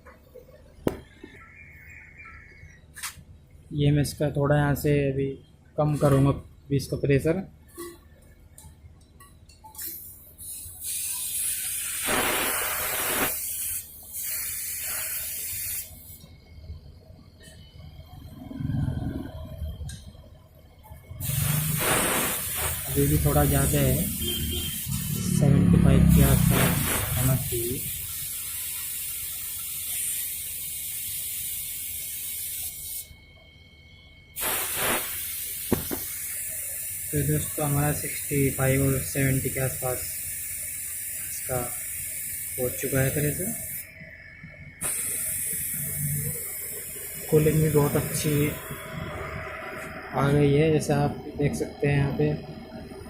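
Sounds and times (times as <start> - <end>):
air conditioner humming: 0.0 - 53.0
refrigerant hissing out: 9.8 - 16.2, 21.2 - 25.4, 26.0 - 33.1, 34.4 - 44.0, 44.8 - 49.7.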